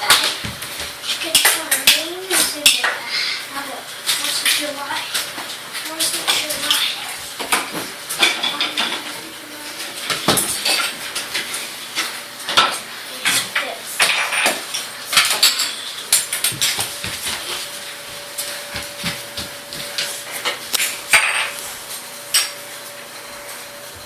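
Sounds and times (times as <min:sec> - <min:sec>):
dishes and cutlery clinking: 0:06.0 - 0:17.6, 0:19.9 - 0:21.7, 0:22.3 - 0:22.6.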